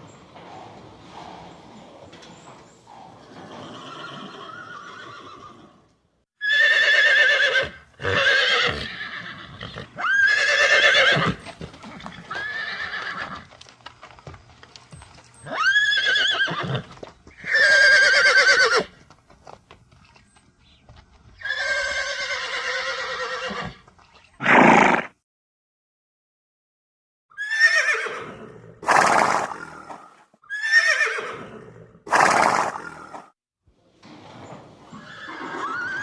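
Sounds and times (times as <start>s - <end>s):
horse whinnying: 2.2s - 13.5s, 15.4s - 18.9s, 21.4s - 23.8s, 24.4s - 25.1s, 27.3s - 33.2s, 34.9s - 36.0s.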